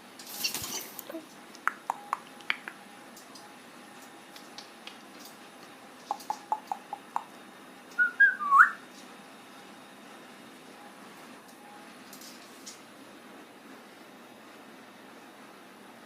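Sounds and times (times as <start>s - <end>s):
parrot whistling: 8.0s - 8.8s.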